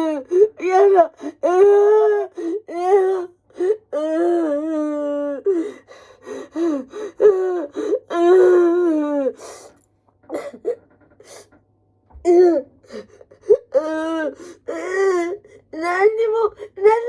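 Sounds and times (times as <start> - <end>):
woman sobbing and wailing: 0.0 - 9.5.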